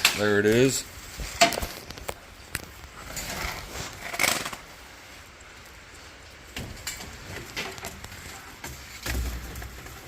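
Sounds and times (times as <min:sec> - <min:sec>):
scrapes: 0:00.0 - 0:05.3.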